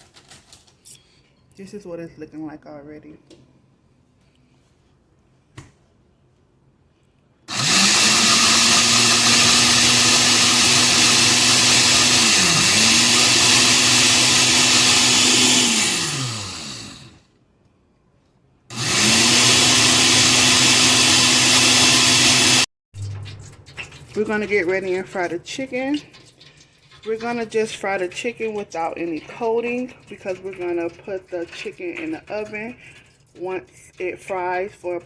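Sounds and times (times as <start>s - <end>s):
blender grinding snacks: 7.5s - 17.2s, 18.7s - 22.7s, 23.7s - 35.0s.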